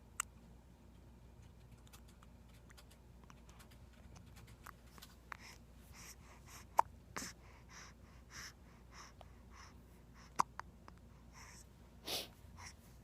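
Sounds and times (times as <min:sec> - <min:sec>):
baby breathing: 0:05.3 - 0:10.4, 0:11.2 - 0:12.8.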